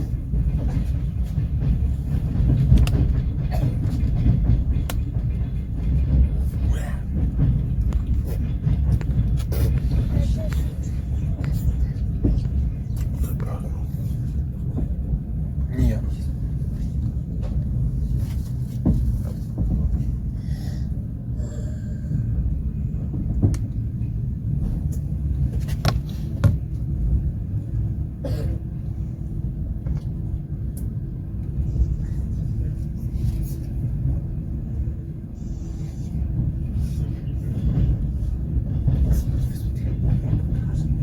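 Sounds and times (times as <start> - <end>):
train carriage rumbling: 0.0 - 41.0
wheels clicking and knocking: 0.1 - 13.2.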